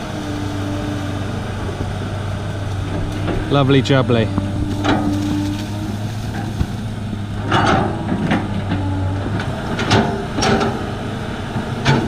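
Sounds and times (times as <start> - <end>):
excavator diesel engine running: 0.0 - 12.0
bucket clanking on stony ground: 7.4 - 10.9.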